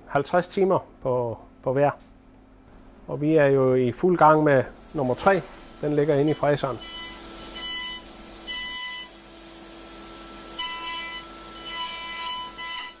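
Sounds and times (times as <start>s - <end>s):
milling machine hiss and hum: 4.3s - 13.0s
cutter whine: 4.9s - 13.0s.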